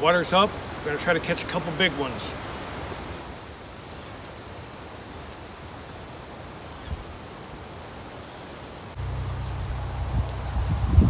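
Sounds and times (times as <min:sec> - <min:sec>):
flowing creek water: 0:00.0 - 0:11.0
wind rumble on microphone: 0:09.0 - 0:11.0.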